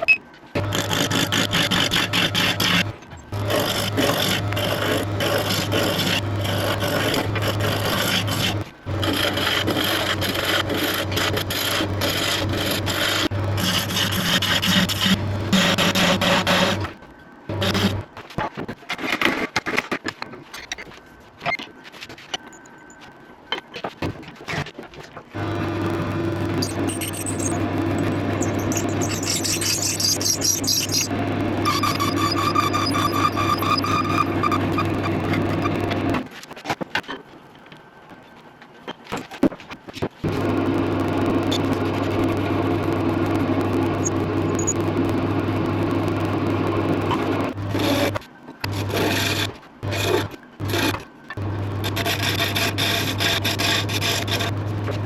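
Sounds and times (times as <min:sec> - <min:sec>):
machine humming: 0:00.0 - 0:18.1, 0:25.4 - 0:36.3, 0:40.2 - 0:55.0
wood lathe motor humming: 0:00.6 - 0:16.8, 0:51.4 - 0:54.6.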